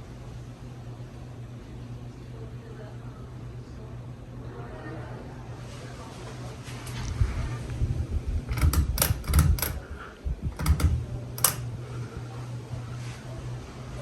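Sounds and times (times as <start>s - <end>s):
ceiling fan motor humming: 0.0s - 14.0s
sharp clicks and knocks: 8.5s - 9.8s, 10.6s - 11.7s.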